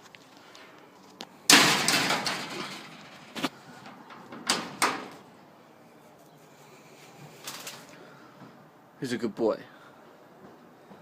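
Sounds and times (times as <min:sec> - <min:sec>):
birdcage door clattering shut: 0:01.5 - 0:03.2, 0:03.9 - 0:05.2.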